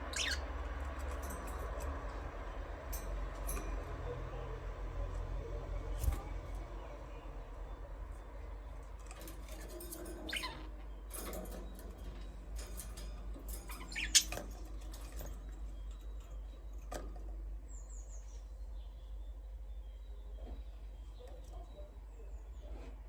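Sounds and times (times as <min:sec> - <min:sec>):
budgies chirping: 0:00.0 - 0:00.5, 0:09.6 - 0:16.2.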